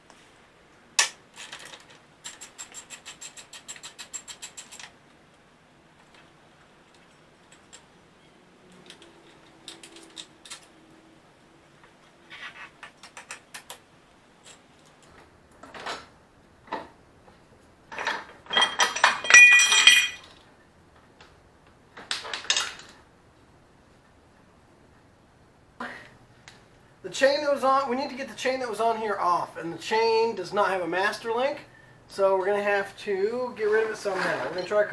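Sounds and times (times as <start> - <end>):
metal tools clinking: 17.9 - 20.4, 22.1 - 23.0, 34.1 - 34.9.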